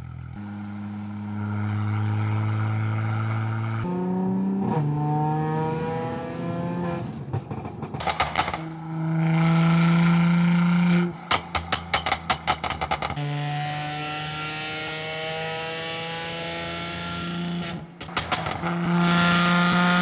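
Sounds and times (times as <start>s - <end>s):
car engine revving: 0.0s - 20.0s
exhaust pops and crackles: 6.9s - 13.6s, 17.8s - 20.0s.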